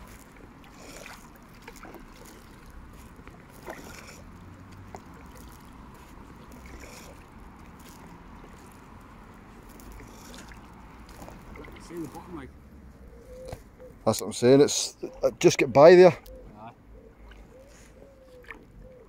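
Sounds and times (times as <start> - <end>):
paddle splashing in water: 0.0 - 12.4, 17.2 - 19.0.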